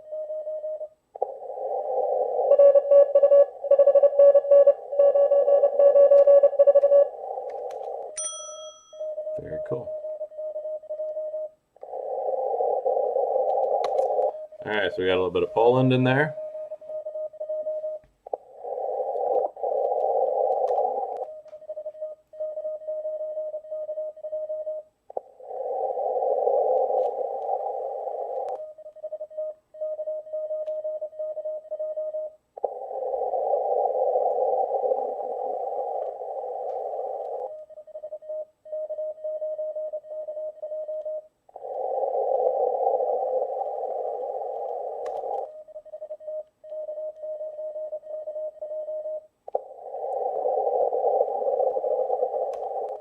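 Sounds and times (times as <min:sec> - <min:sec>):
morse code tone: 0:02.5 - 0:11.6
radio receiver hiss: 0:11.8 - 0:16.4, 0:18.3 - 0:21.4, 0:32.6 - 0:37.6, 0:41.6 - 0:45.5, 0:49.5 - 0:53.0.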